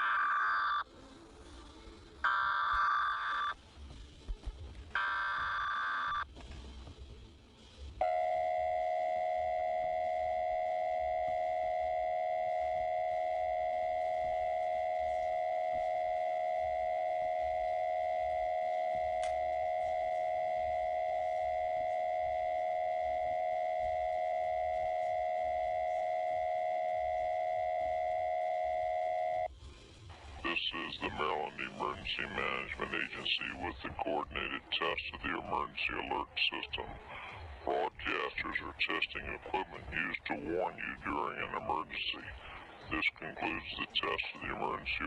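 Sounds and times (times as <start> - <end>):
two-tone alarm: 8.0 - 29.5.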